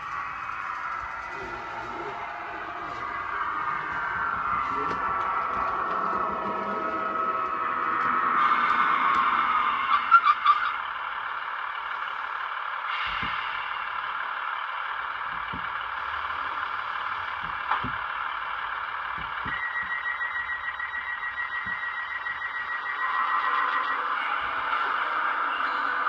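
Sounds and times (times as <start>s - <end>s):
model locomotive engine sound: 0.0s - 26.0s
pulsing beep-like tone: 19.4s - 26.0s.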